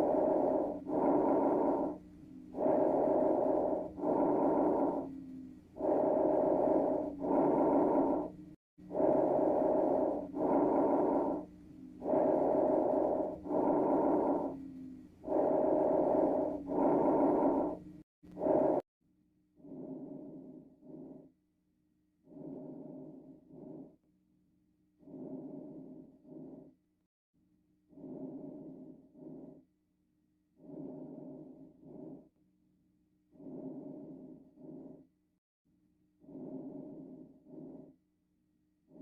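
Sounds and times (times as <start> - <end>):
lung breath sounds through stethoscope: 0.0 - 18.8, 19.6 - 21.3, 22.2 - 24.0, 25.0 - 26.8, 27.9 - 29.6, 30.6 - 32.3, 33.3 - 35.1, 36.2 - 38.0
wheeze-like tone: 0.0 - 18.8.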